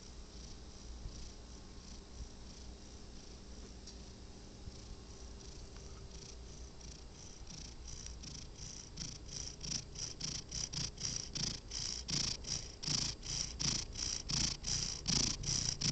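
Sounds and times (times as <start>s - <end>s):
cat breathing with a rasp: 4.8s - 15.9s.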